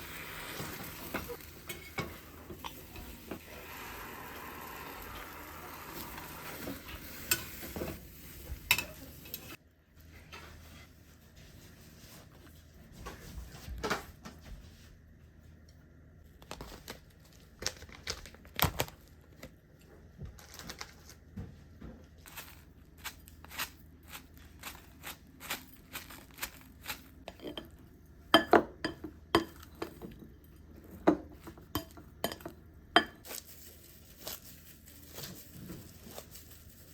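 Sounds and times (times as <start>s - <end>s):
steady sizzle: 0.0s - 9.6s.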